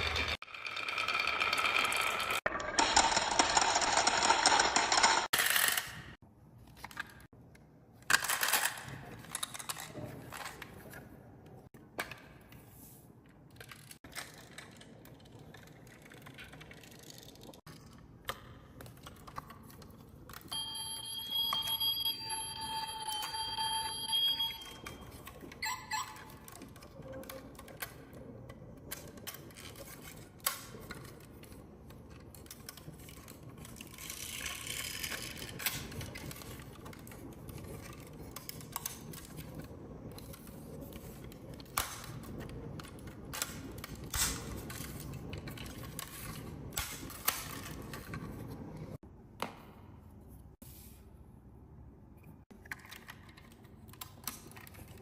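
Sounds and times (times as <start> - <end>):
marbles rolling on wooden run: 0.0 - 5.9
marbles clicking on track: 0.1 - 5.9
high ringing tone: 20.5 - 25.2.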